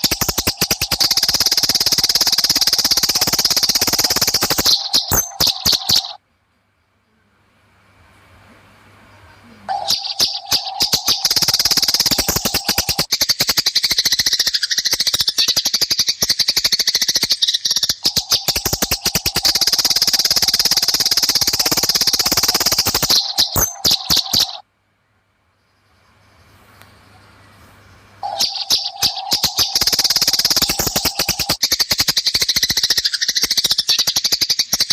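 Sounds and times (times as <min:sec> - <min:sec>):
sparrows chattering: 0:00.0 - 0:06.2, 0:09.1 - 0:24.6, 0:25.7 - 0:34.9.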